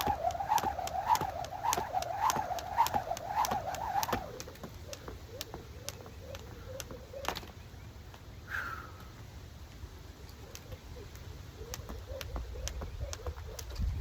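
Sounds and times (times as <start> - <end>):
jump rope slapping the ground: 0.0 - 7.4, 11.8 - 13.7.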